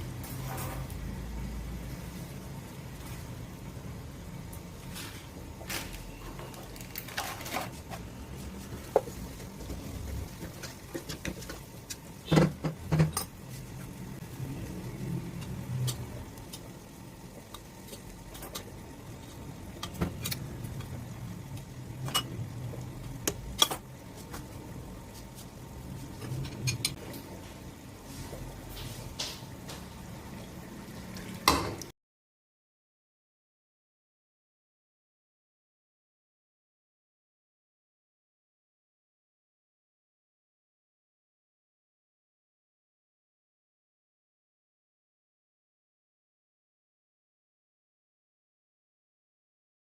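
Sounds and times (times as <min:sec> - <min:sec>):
metal utensils clinking on pot: 0:22.0 - 0:22.4, 0:23.5 - 0:23.9, 0:26.2 - 0:27.0.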